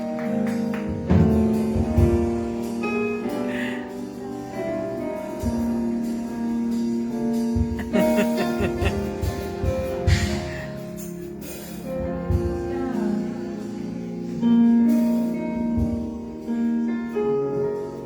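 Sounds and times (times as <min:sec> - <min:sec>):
bass line: 0:07.7 - 0:10.9.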